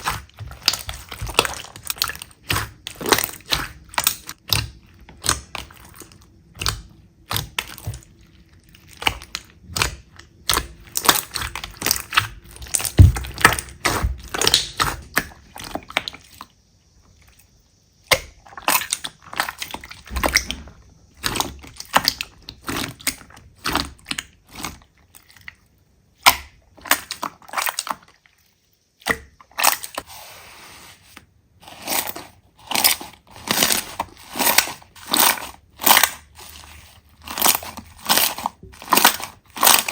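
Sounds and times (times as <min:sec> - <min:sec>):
slime crackling and popping: 0:00.0 - 0:05.8, 0:37.2 - 0:39.9.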